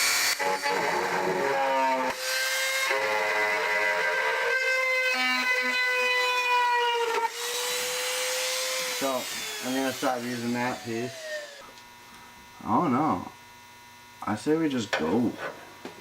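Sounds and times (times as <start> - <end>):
rotary tool whining: 0.0 - 11.8.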